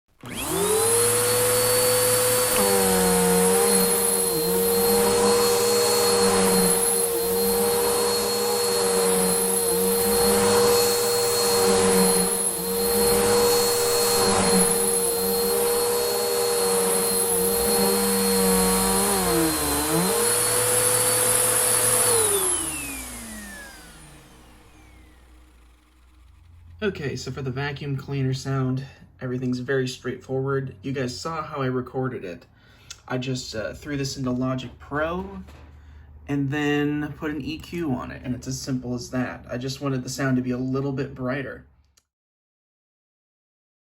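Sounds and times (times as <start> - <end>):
vacuum cleaner motor whining: 0.1 - 26.8.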